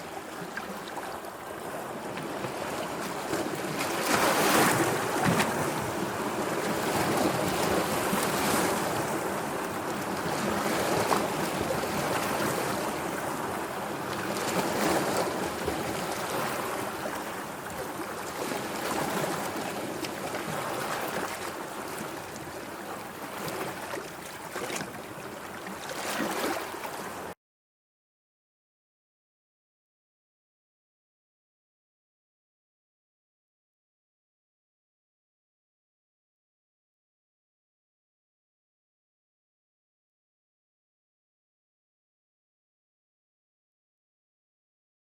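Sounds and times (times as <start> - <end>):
sea waves washing ashore: 0.0 - 27.4.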